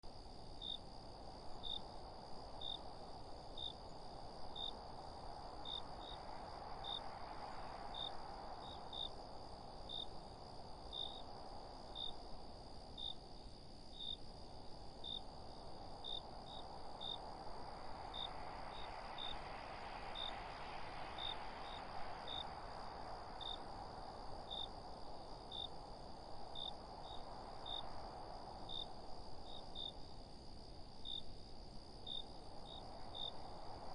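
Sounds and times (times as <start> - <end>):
crickets chirping: 0.0 - 33.9
wind rustling leaves: 0.0 - 33.9
high insect trill: 0.1 - 33.9.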